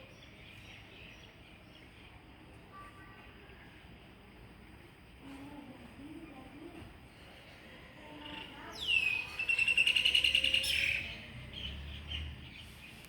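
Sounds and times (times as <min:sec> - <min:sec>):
bird singing a trill: 0:08.2 - 0:13.0.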